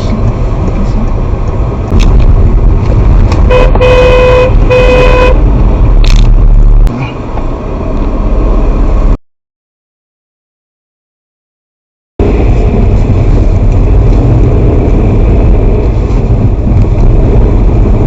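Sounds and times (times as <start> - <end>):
car driving rumble: 0.0 - 9.2, 12.2 - 18.0
car horn blasts: 3.4 - 5.4.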